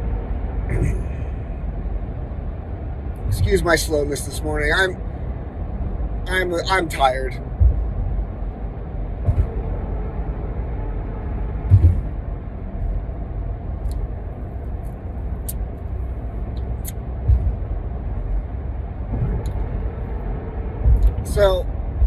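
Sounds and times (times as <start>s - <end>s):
low vehicle rumble: 0.0s - 22.0s
soft thumps: 7.5s - 8.2s, 9.2s - 9.8s, 11.6s - 12.2s, 17.2s - 17.8s, 20.8s - 22.0s.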